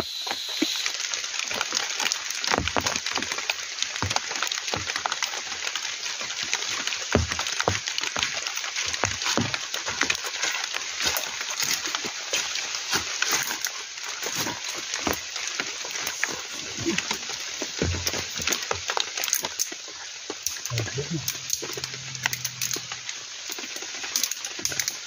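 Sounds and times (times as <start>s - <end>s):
heavy rain falling: 0.3s - 25.0s.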